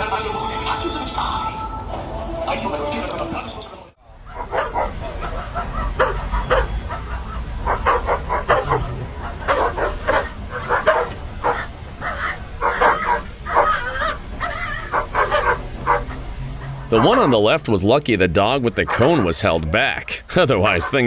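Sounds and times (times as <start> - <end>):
dogs barking and yelping: 4.1 - 17.6, 18.4 - 21.0.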